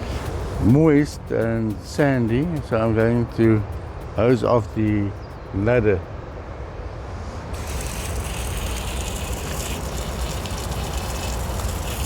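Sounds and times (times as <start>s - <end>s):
hose water spraying: 7.5s - 12.0s.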